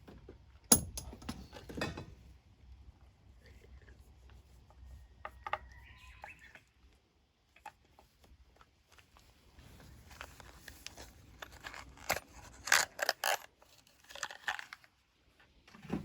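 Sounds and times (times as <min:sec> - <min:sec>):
sharp metallic knocks: 0:00.7 - 0:01.3
hand tools clicking and scraping: 0:00.7 - 0:01.8, 0:10.2 - 0:14.8.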